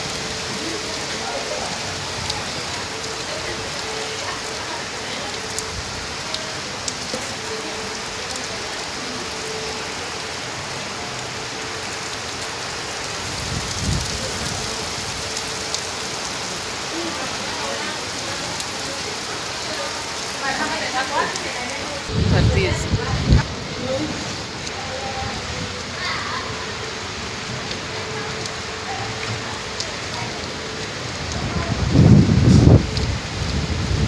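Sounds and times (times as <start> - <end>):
heavy rain pouring: 0.0 - 34.0
raindrop ticks: 1.1 - 8.7, 11.8 - 23.5, 27.4 - 33.7
low rumble: 22.1 - 23.8.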